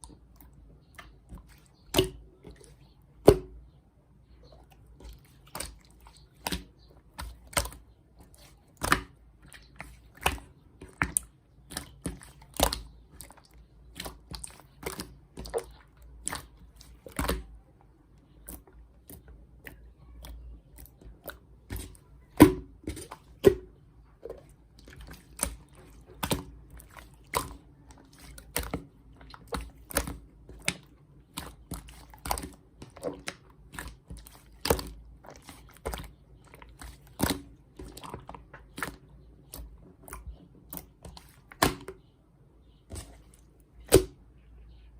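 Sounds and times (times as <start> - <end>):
chewing crunchy food: 24.3 - 41.5.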